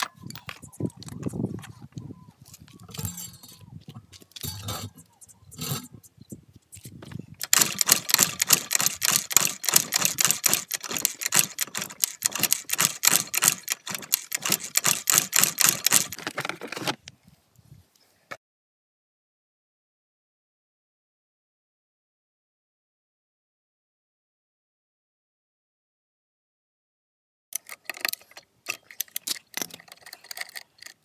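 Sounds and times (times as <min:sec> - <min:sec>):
rapid sharp clicks: 0:07.4 - 0:16.2.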